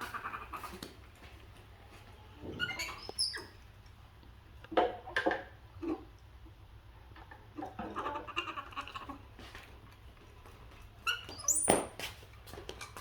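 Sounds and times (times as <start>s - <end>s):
brief high squeaks: 11.1s - 11.9s.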